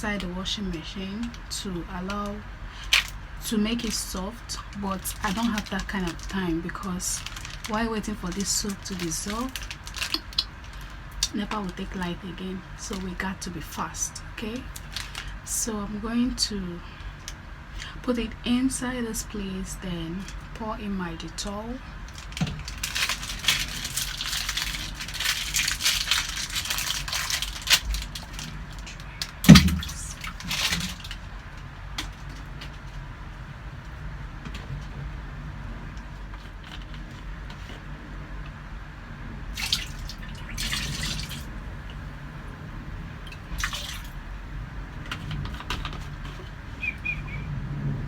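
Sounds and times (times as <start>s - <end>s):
liquid pouring and splashing: 22.7s - 31.4s, 39.5s - 44.4s
loud knock: 29.5s - 30.2s.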